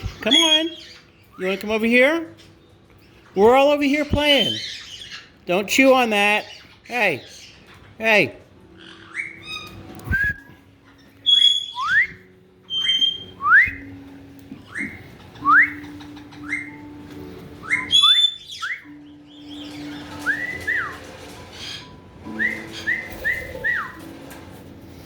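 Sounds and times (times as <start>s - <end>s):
parrots whistling: 0.0s - 24.8s
harsh high parrot calls: 10.8s - 13.9s, 14.7s - 24.0s.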